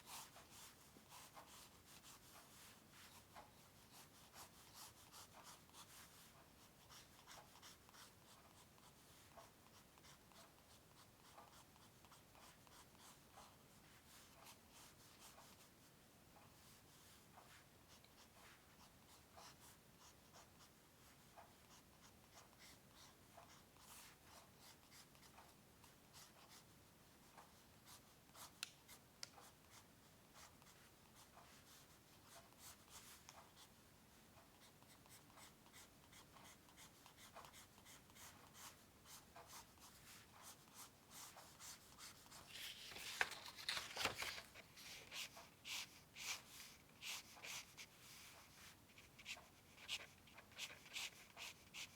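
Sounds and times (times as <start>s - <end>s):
pencil scratching on paper: 0.0s - 15.7s, 16.9s - 25.4s, 34.6s - 51.9s.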